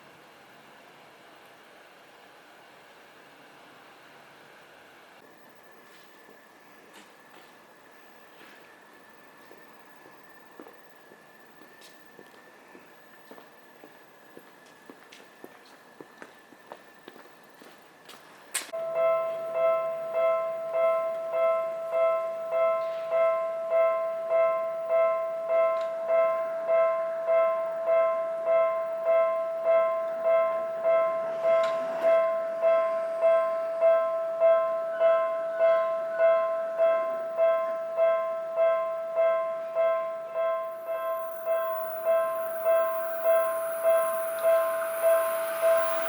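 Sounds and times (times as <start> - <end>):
level crossing warning bell: 18.7 - 46.0.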